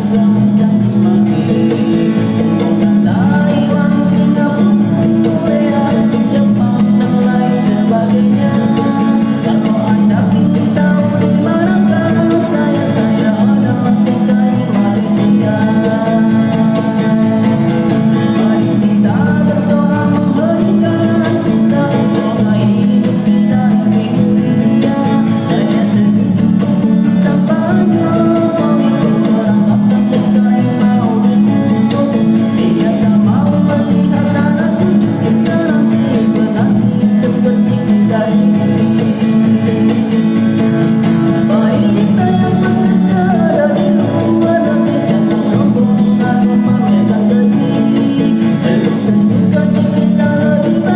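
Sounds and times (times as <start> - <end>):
man singing: 0.0 - 50.9
strummed acoustic guitar: 0.0 - 50.9.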